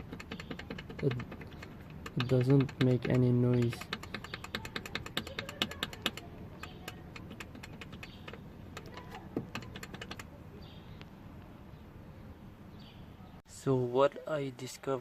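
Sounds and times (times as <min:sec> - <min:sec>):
rapid light clicks and taps: 0:00.0 - 0:10.3.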